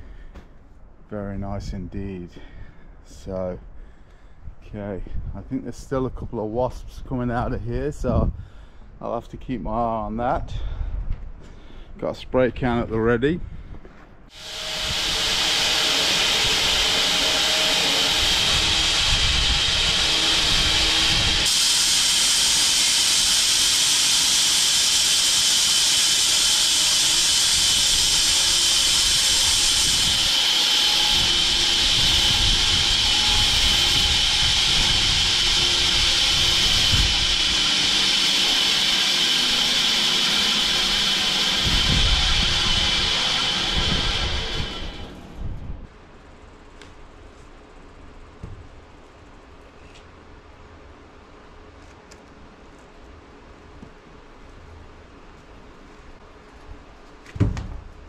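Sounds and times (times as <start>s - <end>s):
bandsaw mill cutting log: 14.3s - 45.6s.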